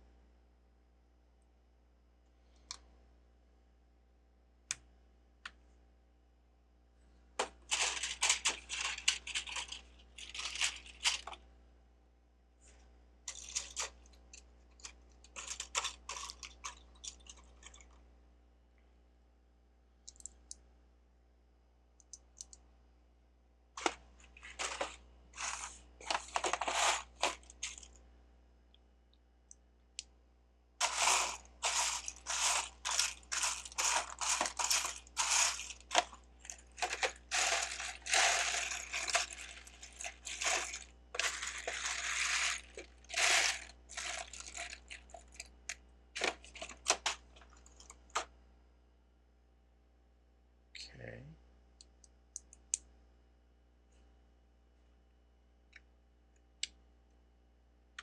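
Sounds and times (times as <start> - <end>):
plastic bricks clattering: 7.4 - 11.4, 14.8 - 17.9, 23.8 - 27.9, 30.8 - 45.3, 46.2 - 48.2.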